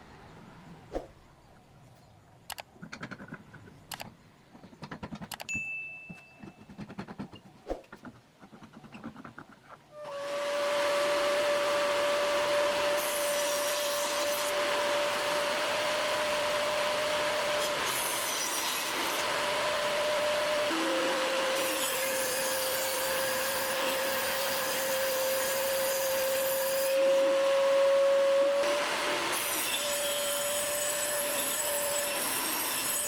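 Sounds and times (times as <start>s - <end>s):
tools and wood knocking: 2.5s - 9.8s
power tool cutting wood hiss: 10.0s - 33.0s
power tool motor running: 10.2s - 33.0s.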